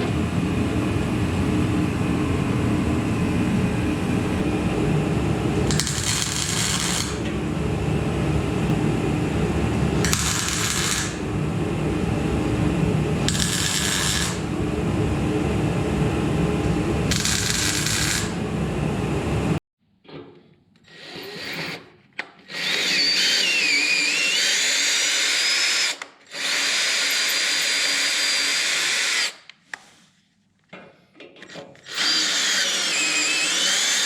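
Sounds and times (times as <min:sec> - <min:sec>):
shop noise hum: 0:00.0 - 0:19.6
welding bursts: 0:05.7 - 0:07.2, 0:10.0 - 0:11.2, 0:13.2 - 0:14.5, 0:17.1 - 0:18.4.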